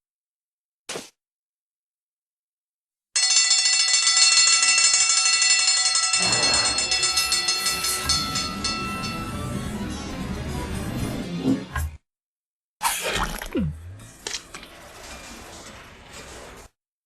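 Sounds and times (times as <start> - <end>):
cartoon bell ringing rapidly: 3.2 - 10.2.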